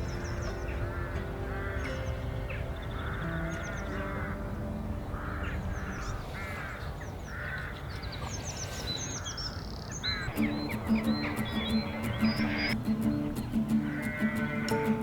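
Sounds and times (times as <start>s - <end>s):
small birds chirping: 0.0s - 4.4s, 5.1s - 15.0s
soft background music: 0.0s - 6.6s, 10.3s - 15.0s
corvids calling: 0.0s - 15.0s.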